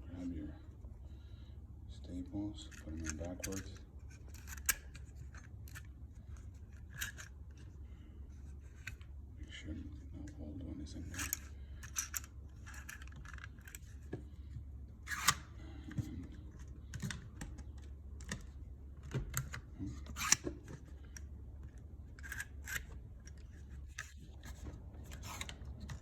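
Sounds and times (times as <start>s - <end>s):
cable stapler clicks and rattles: 16.8s - 21.3s.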